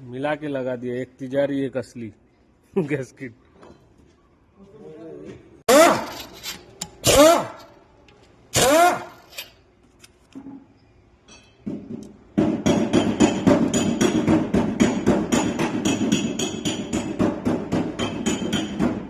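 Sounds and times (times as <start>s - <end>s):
rapid metallic hammering: 12.4s - 19.0s.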